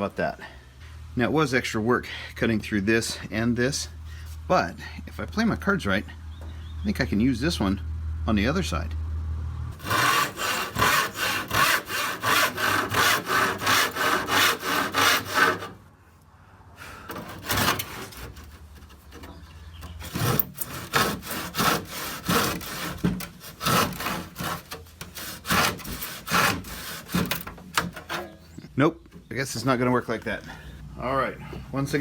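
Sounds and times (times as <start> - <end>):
handsaw cutting wood: 9.8 - 15.8, 17.0 - 28.3.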